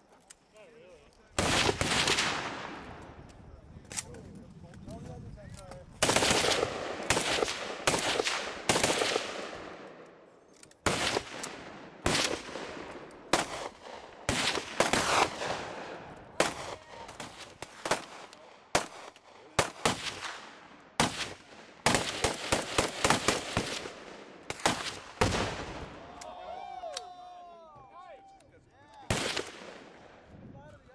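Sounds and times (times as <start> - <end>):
gunfire with echo: 1.4 - 3.0, 6.0 - 9.9, 10.9 - 25.9, 29.1 - 30.1.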